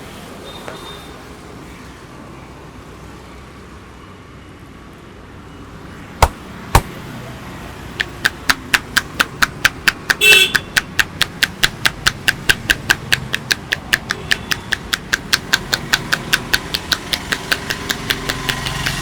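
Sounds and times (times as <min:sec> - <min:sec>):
traffic hum: 0:04.7 - 0:19.0
hands slapping a head: 0:06.2 - 0:06.9, 0:08.0 - 0:19.0.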